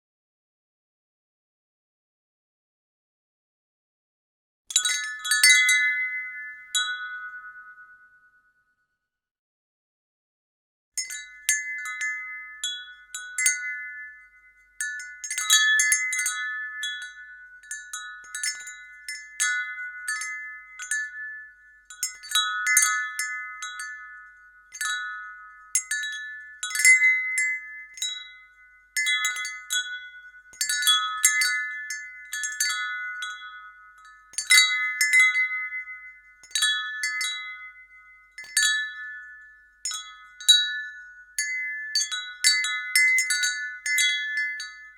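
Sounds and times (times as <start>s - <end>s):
wind chime ringing: 11.0s - 44.9s.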